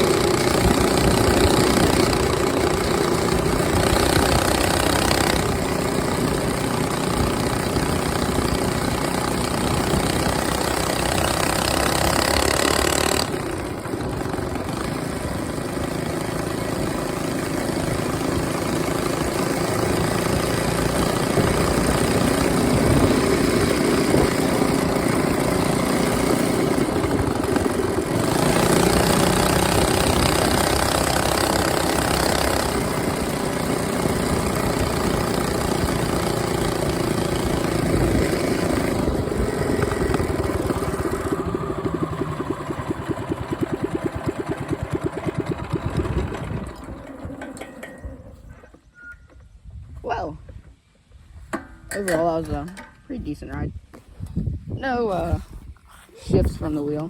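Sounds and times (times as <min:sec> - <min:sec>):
small engine running: 0:00.0 - 0:48.8.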